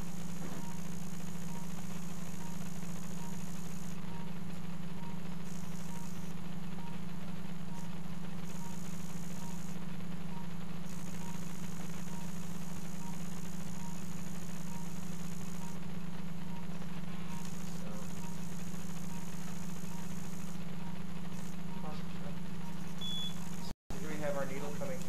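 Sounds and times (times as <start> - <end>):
low electrical hum: 0.0 - 25.0
short electronic beeps: 22.6 - 23.7.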